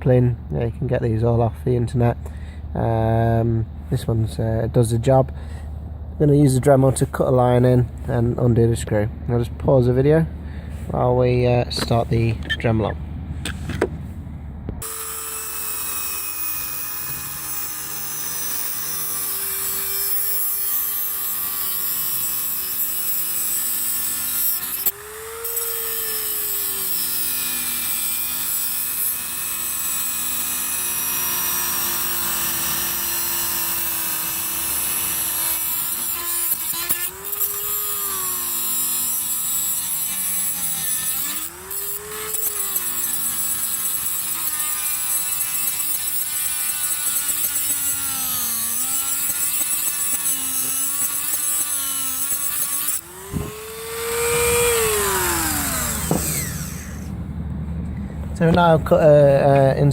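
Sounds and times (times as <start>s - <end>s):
rotary tool grinding metal: 14.8s - 57.2s.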